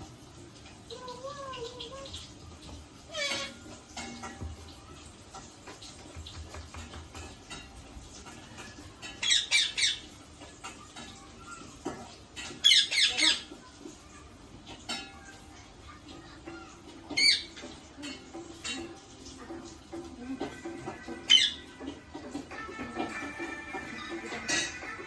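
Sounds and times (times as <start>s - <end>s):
parakeet squawking: 3.0s - 3.9s, 8.4s - 10.6s, 11.3s - 13.7s, 17.0s - 18.8s, 20.4s - 25.0s.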